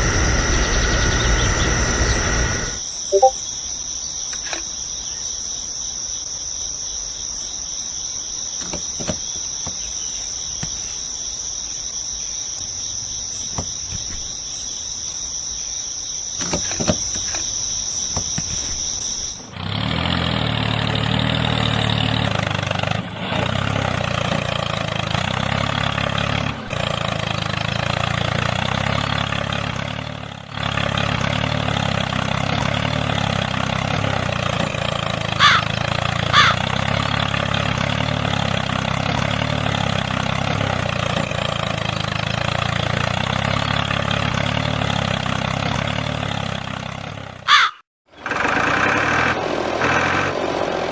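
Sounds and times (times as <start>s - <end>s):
tractor engine running: 0.0s - 3.4s, 16.3s - 50.9s.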